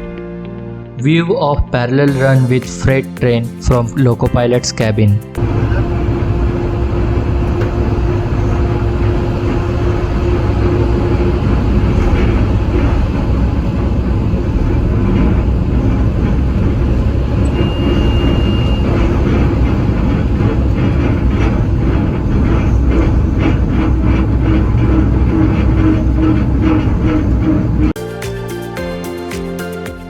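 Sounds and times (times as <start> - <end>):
train rumble from cab: 5.2 - 28.0
brief high tone: 5.4 - 6.3, 17.4 - 19.6.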